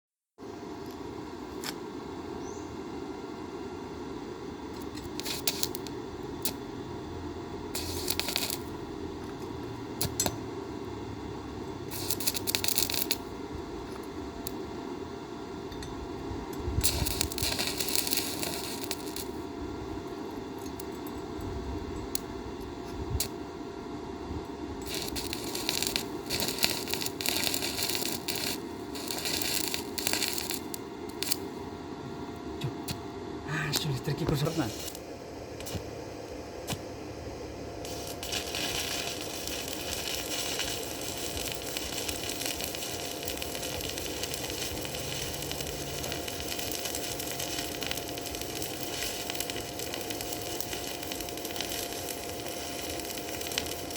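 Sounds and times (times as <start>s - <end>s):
welding arc crackling: 4.7s - 14.6s, 16.6s - 19.5s, 23.2s - 23.4s, 24.8s - 31.6s, 33.6s - 35.9s, 36.6s - 36.9s, 37.8s - 53.9s.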